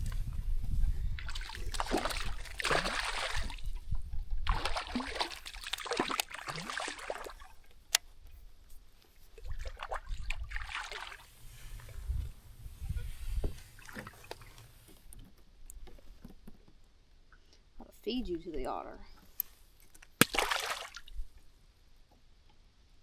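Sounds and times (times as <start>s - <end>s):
water splashing and sloshing: 0.0s - 8.3s, 9.0s - 16.3s, 20.2s - 21.5s.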